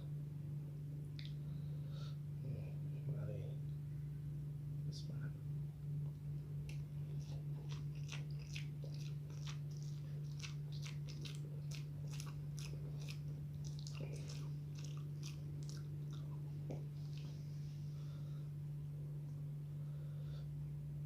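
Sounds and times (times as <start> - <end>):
steady low hum: 0.0 - 21.0
chewing soft food: 1.1 - 1.5, 6.0 - 18.4
wet mouth clicks: 1.2 - 1.4.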